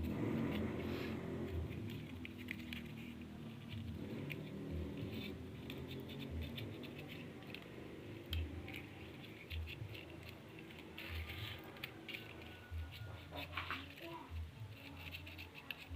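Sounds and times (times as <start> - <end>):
light scratching: 0.0 - 15.9.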